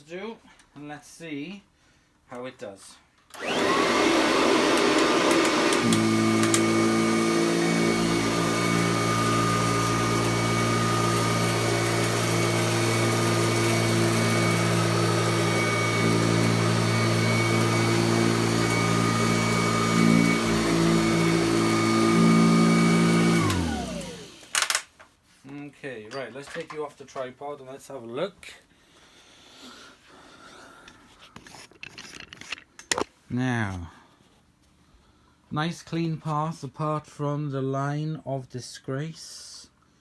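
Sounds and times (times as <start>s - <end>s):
vacuum cleaner motor whining: 3.4s - 24.8s.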